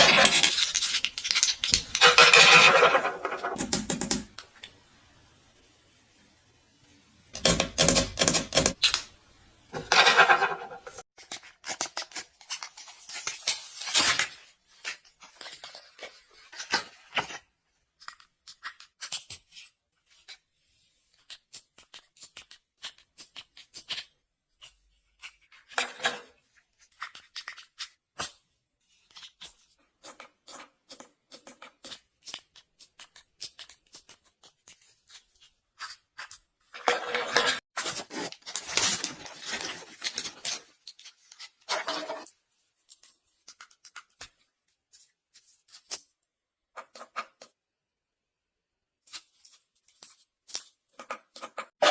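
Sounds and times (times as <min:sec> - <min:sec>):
packaging rustling and tearing: 0:00.0 - 0:03.0, 0:36.9 - 0:42.2.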